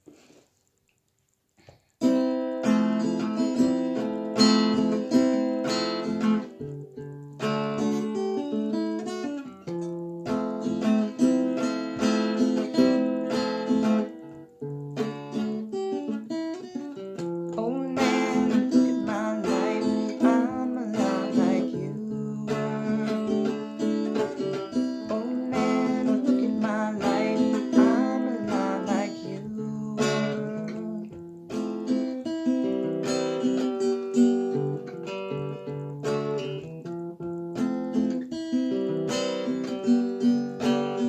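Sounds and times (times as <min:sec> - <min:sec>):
tenor guitar strumming: 0:02.0 - 0:41.0.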